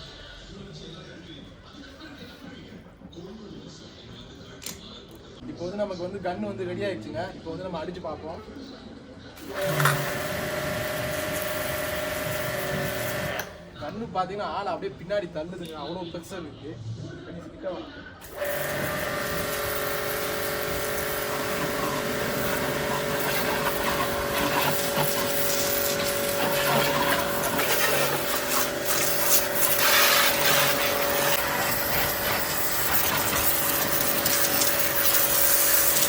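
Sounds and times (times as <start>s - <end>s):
pressure washer motor humming: 9.4s - 13.8s, 18.2s - 36.0s
water jet hissing: 9.4s - 13.8s, 18.2s - 36.0s.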